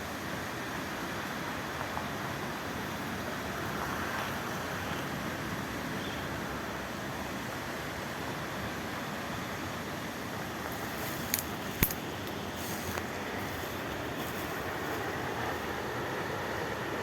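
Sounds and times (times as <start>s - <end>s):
sharp clicks: 11.2s - 12.4s.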